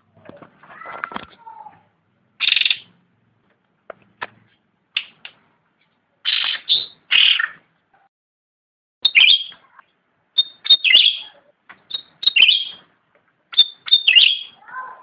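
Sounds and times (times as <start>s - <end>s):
songbird calling: 6.2s - 7.6s, 9.0s - 9.7s, 10.3s - 12.8s, 13.5s - 14.6s.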